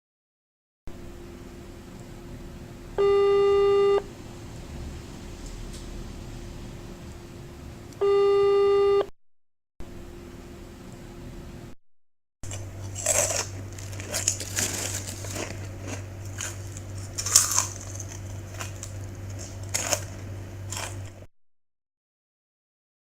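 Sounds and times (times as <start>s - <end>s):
low steady hum: 0.9s - 9.1s, 9.8s - 11.8s, 12.4s - 21.3s
crinkling and crackling: 12.5s - 21.2s.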